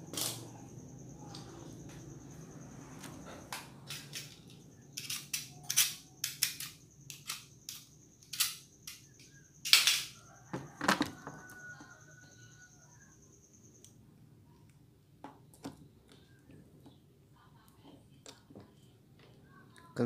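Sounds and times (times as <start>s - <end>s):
hand tools clicking and snapping: 3.8s - 10.2s.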